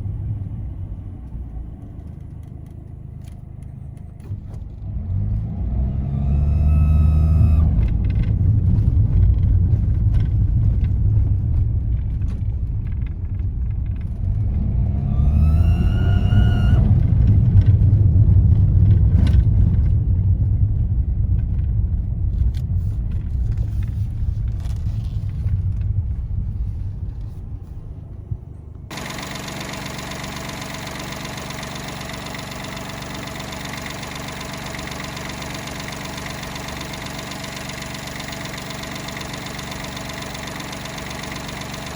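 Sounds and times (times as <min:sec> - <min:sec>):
engine idle whine: 0:00.0 - 0:04.8, 0:06.0 - 0:10.9, 0:15.0 - 0:17.9, 0:23.2 - 0:41.9
car engine rumble: 0:00.0 - 0:41.9.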